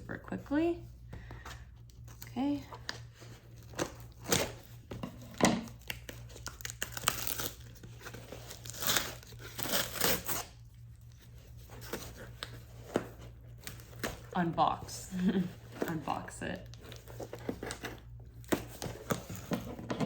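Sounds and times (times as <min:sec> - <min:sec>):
packaging tearing: 0:05.6 - 0:10.6.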